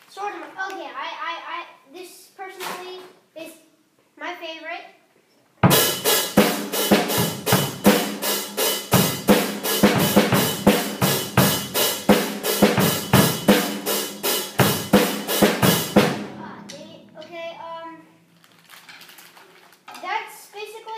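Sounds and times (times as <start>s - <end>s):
drum kit steady beat: 5.6s - 17.6s.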